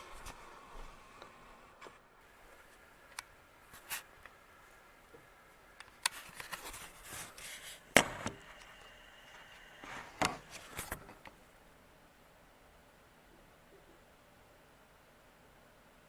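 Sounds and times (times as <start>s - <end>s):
sharp knocks and clattering: 7.9s - 8.8s.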